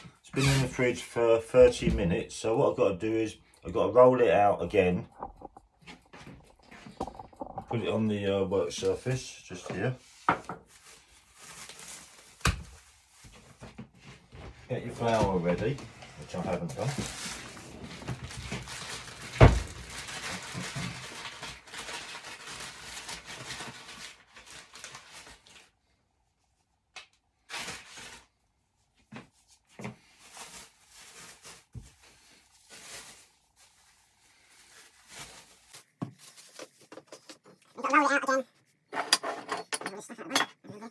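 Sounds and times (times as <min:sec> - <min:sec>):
pastry rustling and crinkling: 0:05.0 - 0:25.8, 0:27.4 - 0:37.8.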